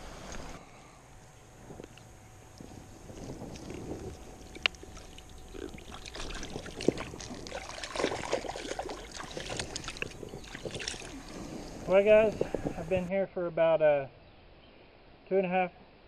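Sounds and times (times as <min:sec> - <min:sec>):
water splashing and sloshing: 0:03.1 - 0:11.5.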